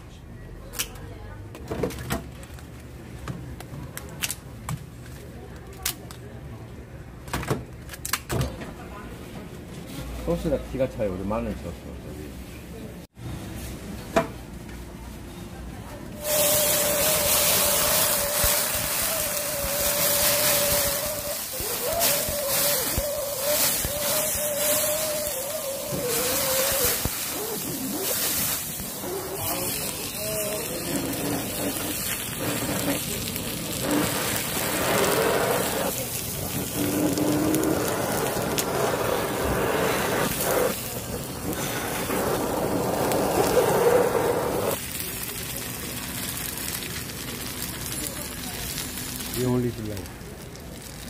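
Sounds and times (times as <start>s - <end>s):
gas torch flame hissing: 16.2s - 45.4s
crab sizzling on a grill: 16.2s - 51.0s.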